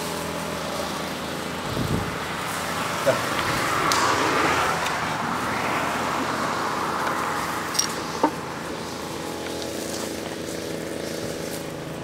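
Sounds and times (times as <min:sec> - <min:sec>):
road traffic: 0:00.0 - 0:12.0.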